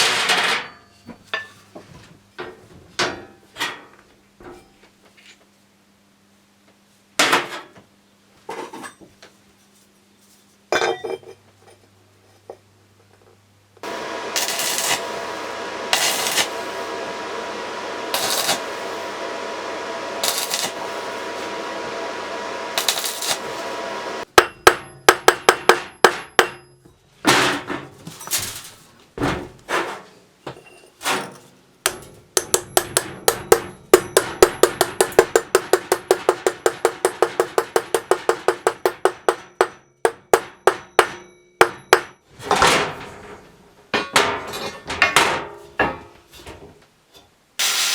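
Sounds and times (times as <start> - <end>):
steady machine sound: 13.8 - 24.3
hammer striking metal: 13.8 - 26.8, 31.9 - 42.2.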